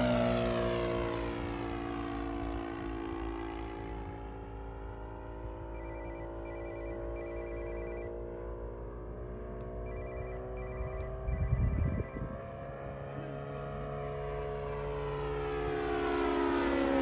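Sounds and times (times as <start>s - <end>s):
model plane engine and propeller droning: 0.0s - 17.0s
high electronic beeping: 5.7s - 8.1s, 9.8s - 12.3s.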